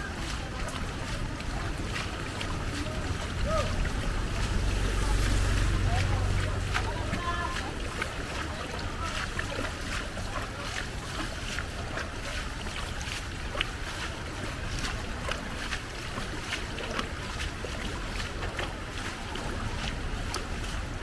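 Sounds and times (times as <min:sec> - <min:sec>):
floodwater rushing and splashing: 0:00.0 - 0:21.0
low water rumble: 0:00.0 - 0:21.0.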